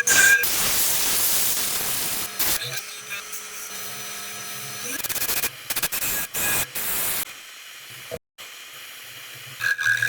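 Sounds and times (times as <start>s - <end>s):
hissing spray bursts: 0.4s - 2.6s.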